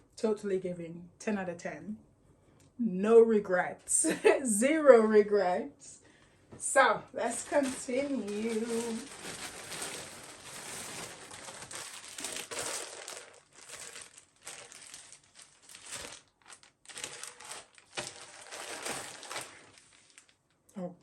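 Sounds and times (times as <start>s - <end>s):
plastic packaging crinkling: 7.2s - 20.6s.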